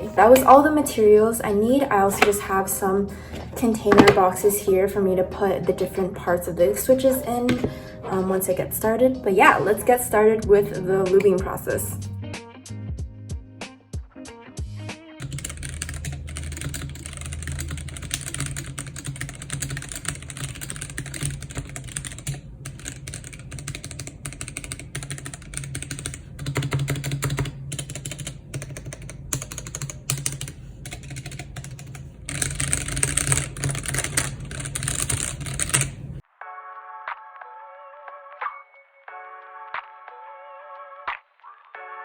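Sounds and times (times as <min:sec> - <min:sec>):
music: 0:00.0 - 0:18.6, 0:36.2 - 0:42.0
mechanical keyboard typing: 0:02.0 - 0:02.6, 0:03.6 - 0:04.4, 0:06.9 - 0:07.8, 0:15.2 - 0:36.0.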